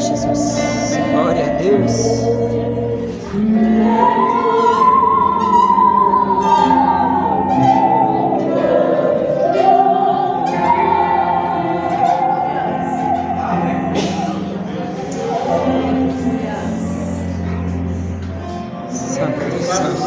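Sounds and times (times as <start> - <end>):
bowed musical saw melody: 0.0 - 15.6.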